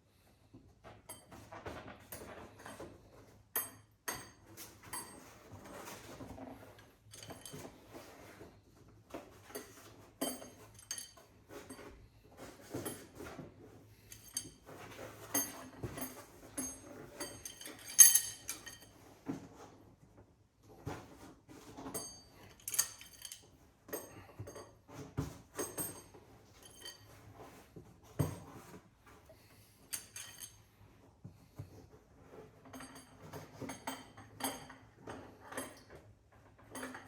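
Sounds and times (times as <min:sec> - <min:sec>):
metal tools clinking and knocking: 0:07.1 - 0:08.0, 0:09.4 - 0:12.0, 0:14.0 - 0:19.1, 0:21.8 - 0:27.4, 0:29.9 - 0:30.7, 0:32.6 - 0:37.0.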